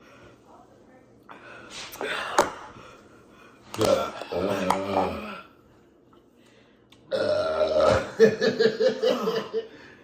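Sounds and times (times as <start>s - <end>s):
person burping: 7.1s - 9.6s.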